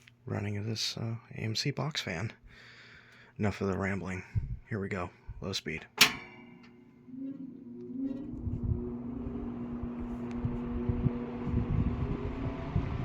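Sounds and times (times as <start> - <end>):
fan motor humming: 6.0 - 13.0
rush of air from fan blades: 8.3 - 13.0.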